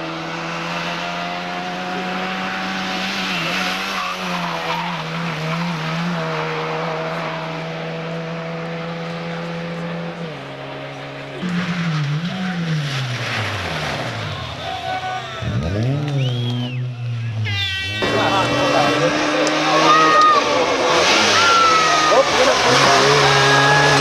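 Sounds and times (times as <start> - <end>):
race car engine at high revs: 0.0 - 14.6, 15.4 - 24.0.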